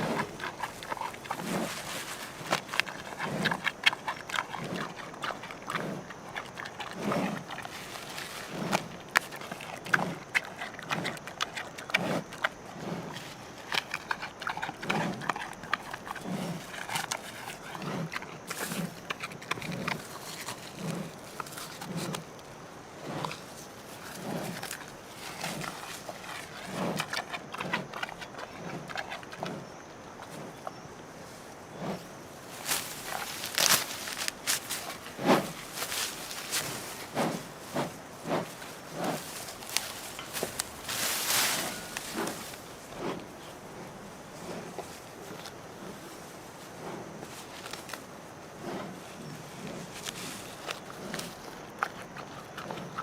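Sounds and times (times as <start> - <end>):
panda crunching and chewing: 0.0 - 22.4, 23.0 - 29.6, 32.6 - 43.3, 49.7 - 53.0
sharp cracks and chomps: 0.0 - 22.4, 32.6 - 43.3.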